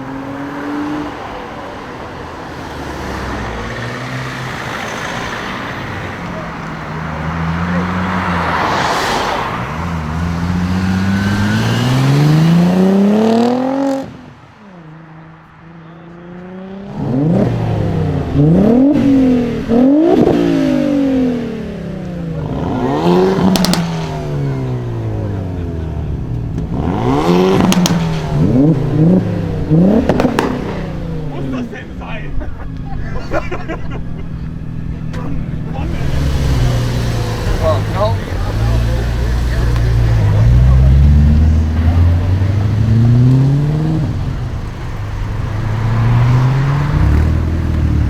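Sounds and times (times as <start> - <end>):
car engine revving: 0.0 - 32.5, 33.2 - 48.0
exhaust cracks: 17.1 - 48.0.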